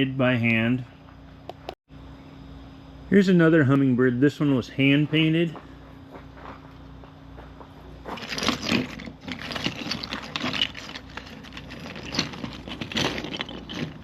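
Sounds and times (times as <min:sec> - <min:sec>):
faint steady hum: 0:00.0 - 0:14.0
objects rustling and clicking: 0:07.4 - 0:14.0.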